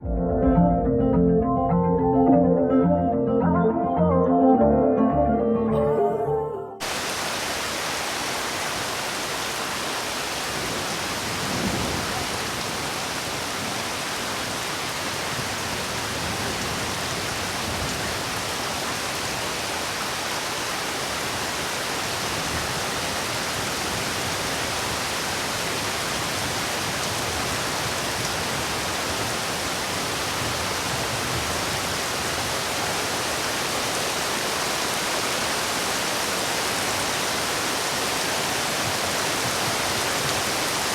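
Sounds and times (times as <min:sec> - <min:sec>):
music: 0:00.0 - 0:06.8
heavy rain falling: 0:06.8 - 0:40.9.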